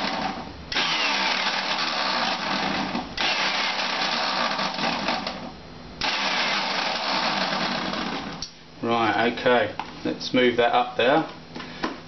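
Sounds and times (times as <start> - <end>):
electric juicer motor whirring: 0.0 - 5.4, 6.0 - 8.4.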